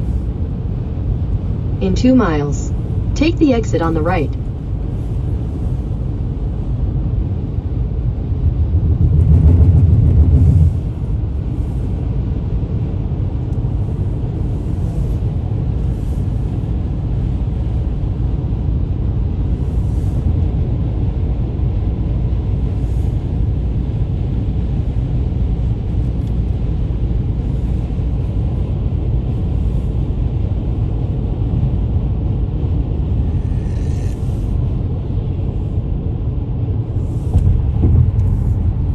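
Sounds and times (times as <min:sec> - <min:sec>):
louder low rumble: 0:00.0 - 0:15.6, 0:30.1 - 0:38.9
car road and engine rumble: 0:00.0 - 0:38.9.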